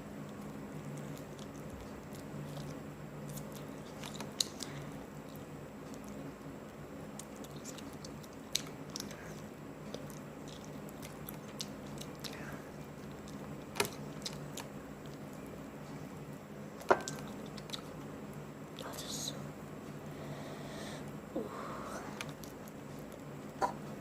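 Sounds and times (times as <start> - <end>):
chewing crispy fried chicken: 0.2 - 15.4, 17.0 - 18.9.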